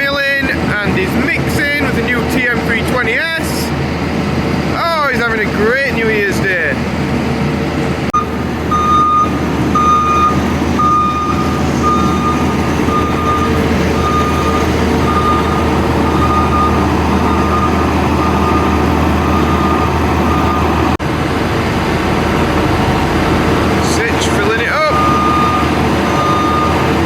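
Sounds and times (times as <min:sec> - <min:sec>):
engine running: 0:00.0 - 0:27.0
reversing alarm beeping: 0:08.2 - 0:20.9, 0:24.4 - 0:26.9.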